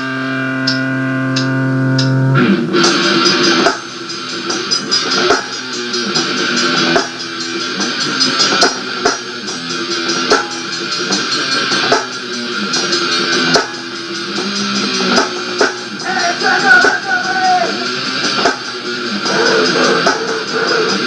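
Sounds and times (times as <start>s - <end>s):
guitars playing chords: 0.0s - 21.0s
drum kit hits: 0.7s - 21.0s.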